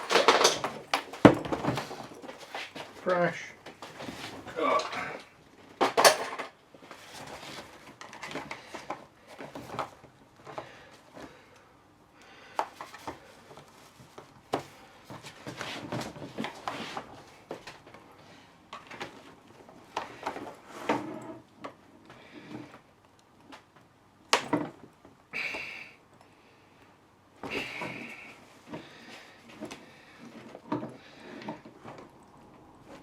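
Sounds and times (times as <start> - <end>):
hand tools clicking and scraping: 0.0 - 1.1.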